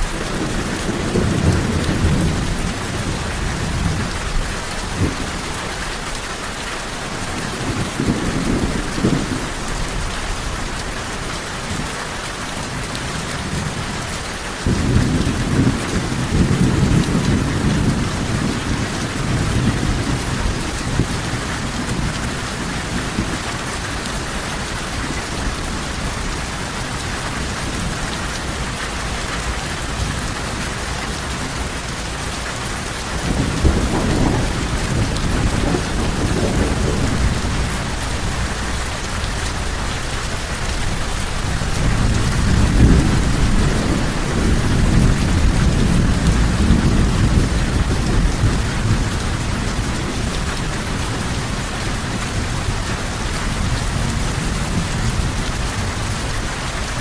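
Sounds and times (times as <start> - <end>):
rolling thunder: 0.0 - 5.8, 7.2 - 10.6, 14.6 - 24.3, 32.9 - 57.0
heavy rain falling: 0.0 - 57.0.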